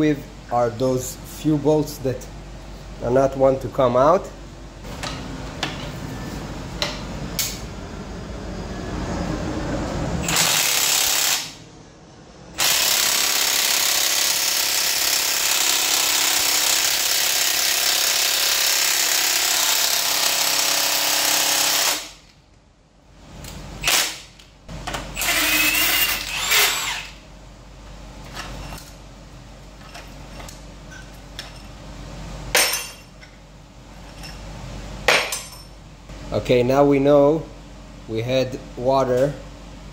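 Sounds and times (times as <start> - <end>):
power tool running: 10.2 - 11.6, 12.6 - 22.2, 25.2 - 27.2
metal parts clinking: 32.5 - 33.3.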